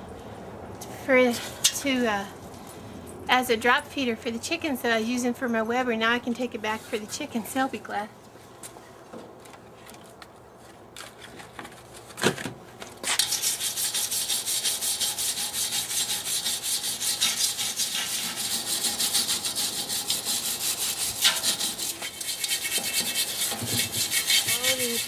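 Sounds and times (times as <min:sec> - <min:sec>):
wire brush scraping steel: 0:13.0 - 0:25.0.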